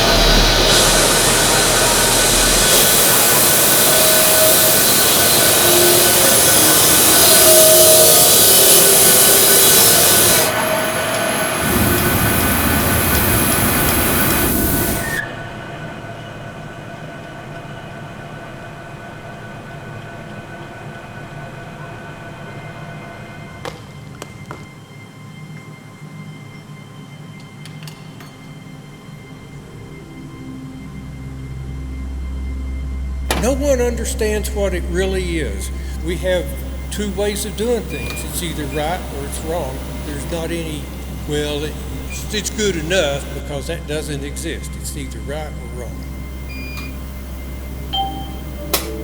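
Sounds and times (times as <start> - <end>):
metalworking machinery cutting: 0.0 - 15.4, 33.3 - 49.0
quiet machine hum: 0.0 - 16.9, 28.3 - 49.0.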